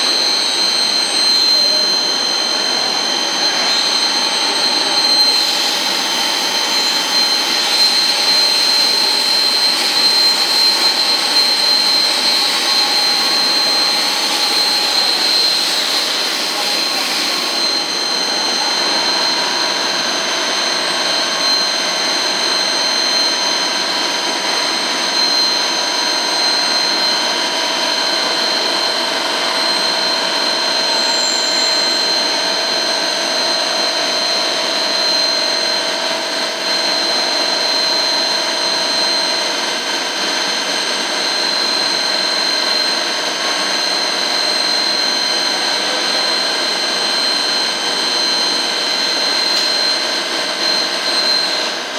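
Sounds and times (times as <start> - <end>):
lathe running with whining tones: 0.0 - 51.9.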